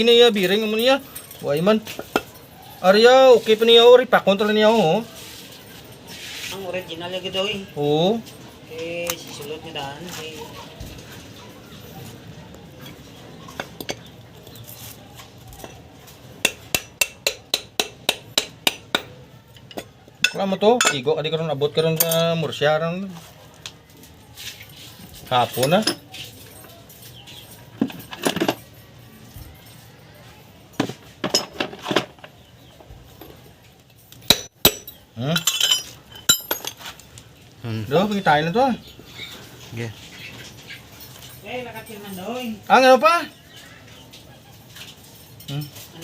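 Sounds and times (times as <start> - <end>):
metal parts clinking: 34.0 - 37.2.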